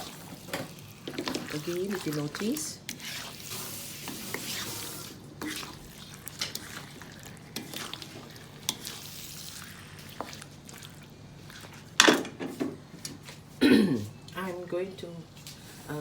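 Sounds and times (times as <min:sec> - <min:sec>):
chicken sizzling in oil: 0:00.0 - 0:11.9.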